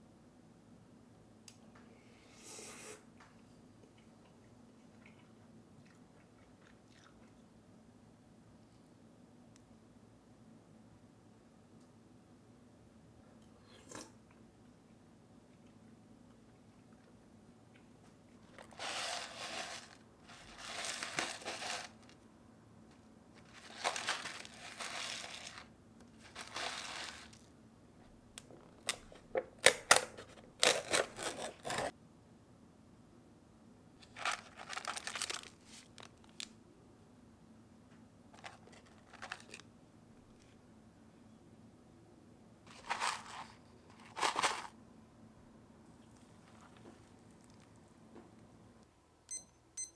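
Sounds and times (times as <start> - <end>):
packaging crinkling and tearing: 18.6 - 22.2, 23.4 - 27.4, 30.6 - 31.9, 34.0 - 36.5, 38.4 - 39.6.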